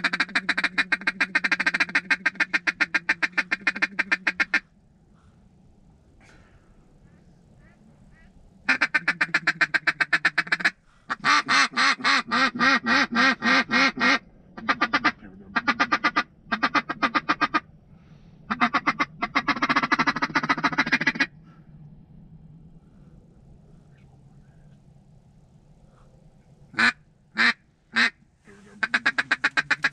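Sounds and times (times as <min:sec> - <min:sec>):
duck call quacks: 0:00.0 - 0:04.6, 0:08.2 - 0:17.6, 0:18.5 - 0:21.3, 0:26.8 - 0:28.2, 0:28.8 - 0:29.9.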